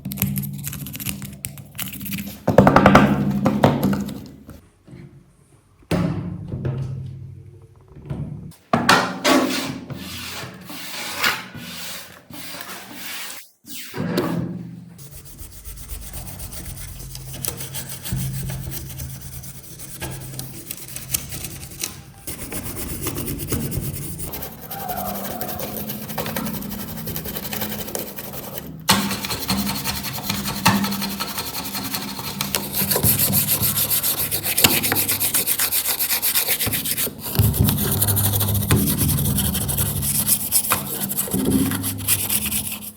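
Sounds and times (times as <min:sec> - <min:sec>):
hand rubbing a hard surface: 0:15.0 - 0:42.9.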